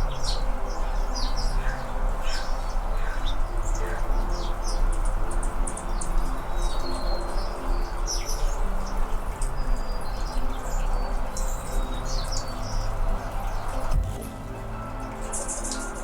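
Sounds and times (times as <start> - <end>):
hummingbirds chirping: 0.0 - 16.0.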